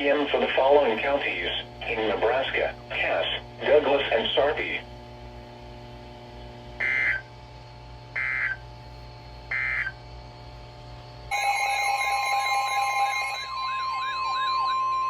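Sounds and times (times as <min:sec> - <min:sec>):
faint steady hum: 0:00.0 - 0:15.0
short data bursts: 0:06.8 - 0:07.3.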